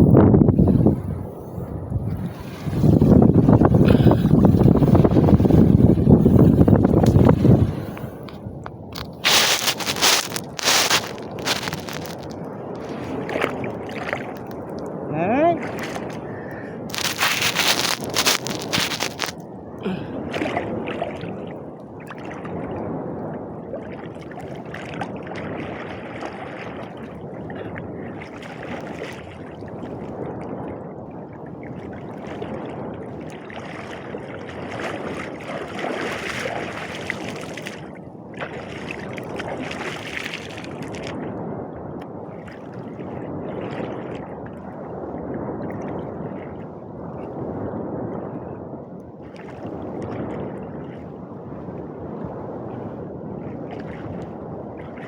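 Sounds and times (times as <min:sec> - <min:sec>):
seawater sloshing and gurgling: 0:00.0 - 0:19.4, 0:20.0 - 0:48.1, 0:49.2 - 0:52.4, 0:53.0 - 0:55.0.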